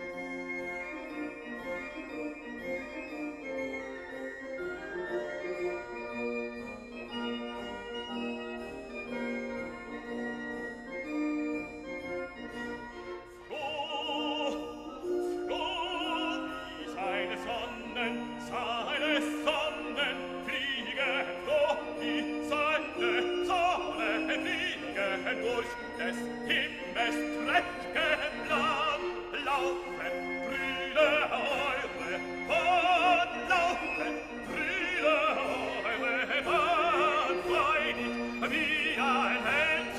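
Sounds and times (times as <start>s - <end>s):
orchestral accompaniment: 0.0s - 39.9s
operatic singing with vibrato: 11.6s - 39.9s.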